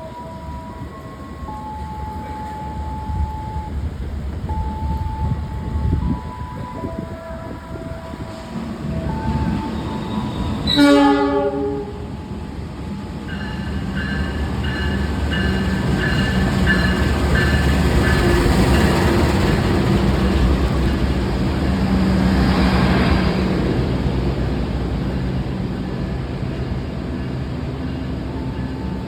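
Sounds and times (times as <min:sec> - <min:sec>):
train rumbling past: 0:00.0 - 0:29.0
train horn: 0:06.5 - 0:12.4.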